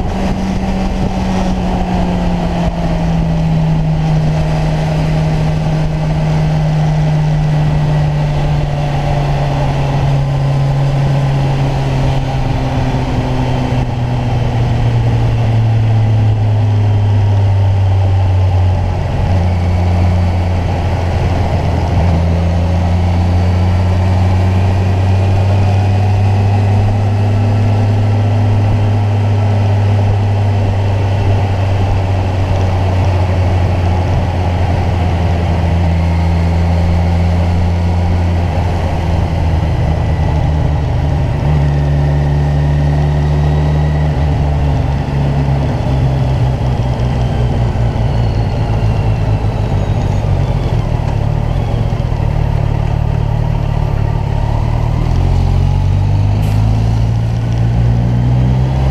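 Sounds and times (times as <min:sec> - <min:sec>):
motorcycle engine running: 0:00.0 - 0:58.9.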